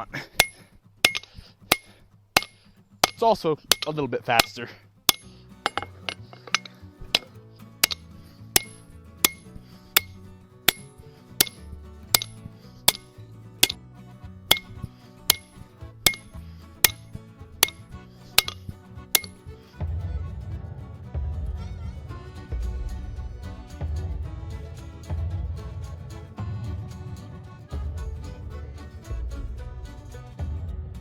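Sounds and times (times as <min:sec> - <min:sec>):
hammer striking steel on anvil: 0:00.4 - 0:13.8, 0:14.5 - 0:17.0, 0:17.6 - 0:19.8
background music: 0:03.8 - 0:31.0.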